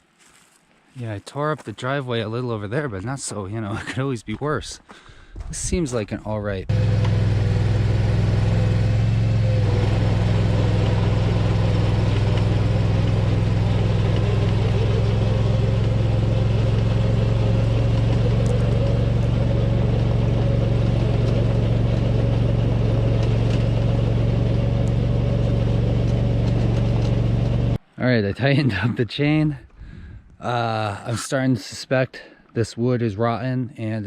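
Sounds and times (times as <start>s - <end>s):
mini-dozer engine running: 6.7s - 27.8s.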